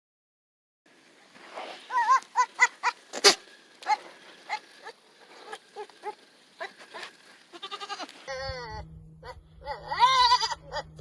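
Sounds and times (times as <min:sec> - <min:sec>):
goats calling: 0:01.2 - 0:08.3.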